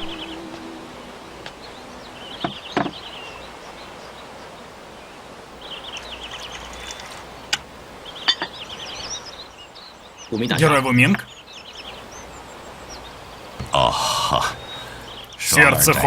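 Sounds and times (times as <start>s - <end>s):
small bird chirping in trills: 0.0s - 15.6s
steady low hiss: 0.0s - 16.0s.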